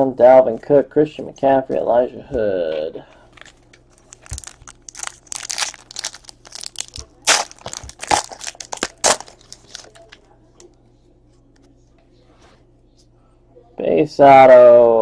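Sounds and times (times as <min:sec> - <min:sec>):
wrapper crinkling and tearing: 0:03.4 - 0:10.2.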